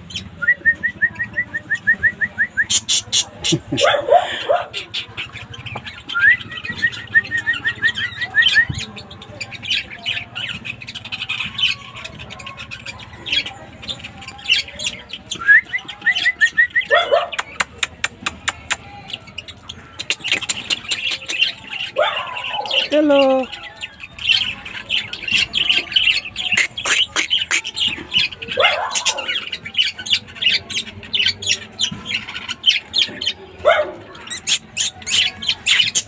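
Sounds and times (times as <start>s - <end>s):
lovebirds chirping and squawking: 0.0s - 36.0s.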